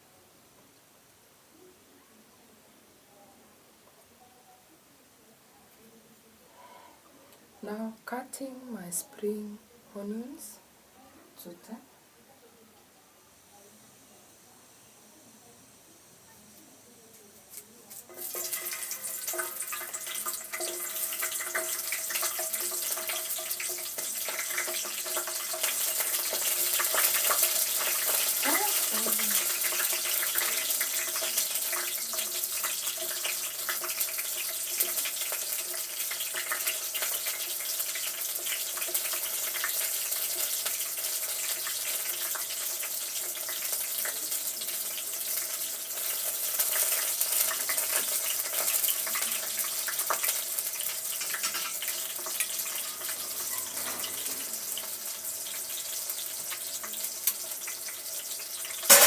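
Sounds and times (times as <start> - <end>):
food sizzling in oil: 15.8 - 59.0.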